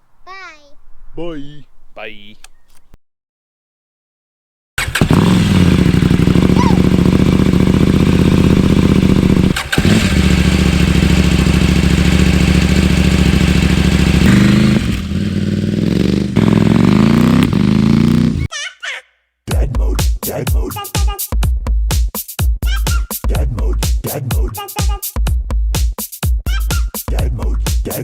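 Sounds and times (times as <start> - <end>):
loud motorcycle engine revving: 4.8 - 18.5.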